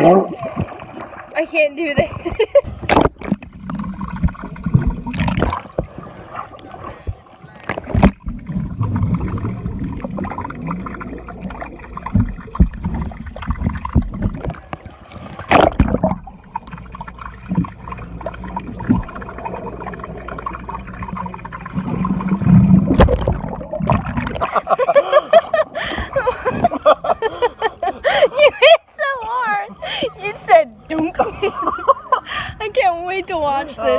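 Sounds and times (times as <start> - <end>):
sharp underwater knocks: 2.0 - 6.0, 7.6 - 9.4, 12.0 - 14.6, 15.2 - 16.4, 22.5 - 24.6
underwater rumble and gurgling: 2.0 - 28.1.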